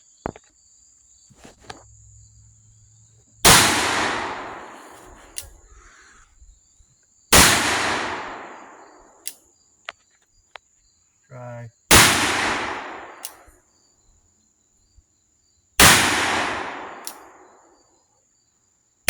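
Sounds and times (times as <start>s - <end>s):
revolver shots echoing: 3.4s - 5.5s, 7.4s - 8.8s, 11.9s - 13.3s
short clicks: 4.5s - 5.9s.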